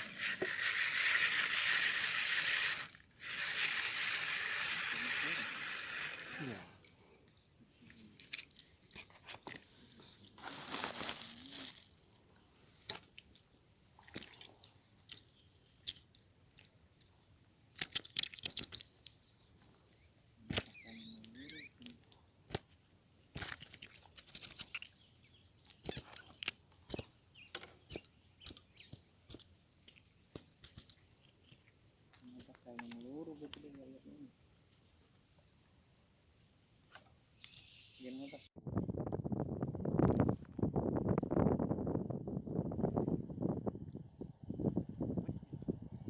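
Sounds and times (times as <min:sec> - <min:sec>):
sharp clicks and rustles: 0:17.7 - 0:19.2, 0:22.5 - 0:25.0, 0:25.6 - 0:33.7.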